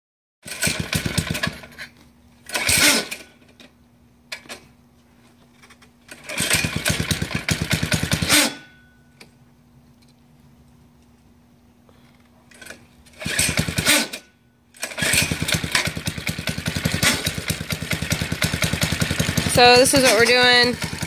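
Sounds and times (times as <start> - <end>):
small engine sputtering: 0.4 - 1.8, 6.2 - 8.7, 12.5 - 14.2, 14.8 - 21.0.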